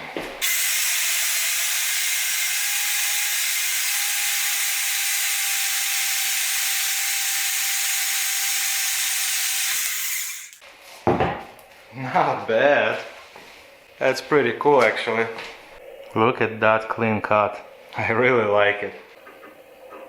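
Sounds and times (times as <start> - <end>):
bandsaw cutting metal: 0.4 - 10.6.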